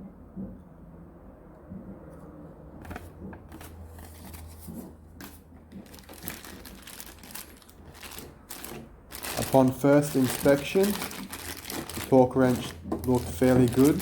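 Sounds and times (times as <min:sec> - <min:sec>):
paper crinkling and rustling: 0:02.8 - 0:14.0.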